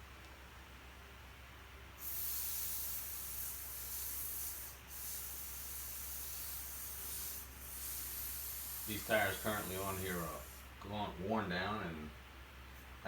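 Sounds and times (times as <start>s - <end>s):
air hissing out of tire: 2.0s - 10.7s.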